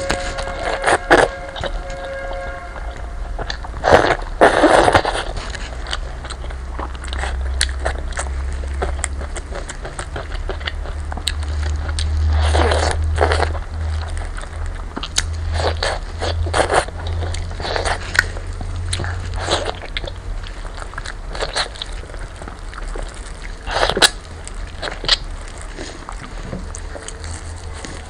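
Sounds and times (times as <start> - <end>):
person chewing meat: 0.0 - 28.0
steady low hum: 0.0 - 28.0.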